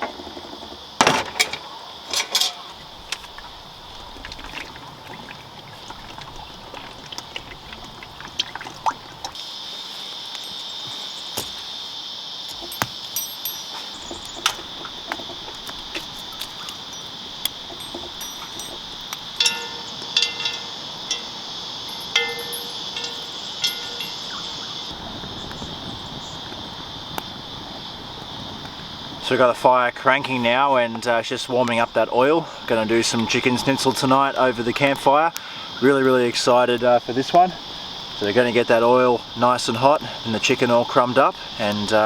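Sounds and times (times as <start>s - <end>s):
high insect drone: 0.0s - 42.0s
ringing chime-like notes: 16.7s - 24.9s.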